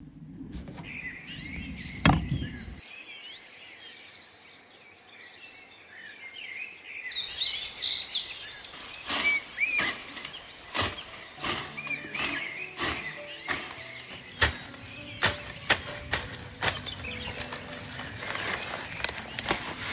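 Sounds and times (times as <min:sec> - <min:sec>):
small birds chirping: 0:00.8 - 0:19.9
sharp knocks: 0:09.8 - 0:16.9.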